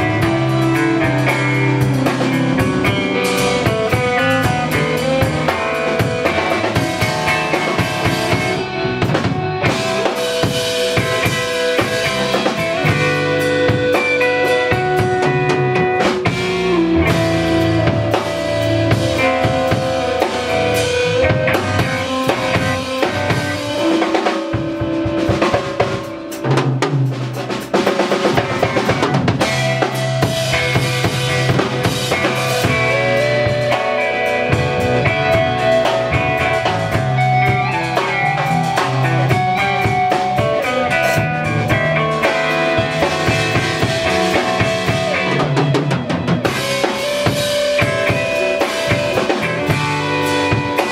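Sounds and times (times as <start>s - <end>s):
bass line: 0.0s - 50.9s
drum kit playing a steady beat: 0.0s - 50.9s
live band music: 0.0s - 50.9s.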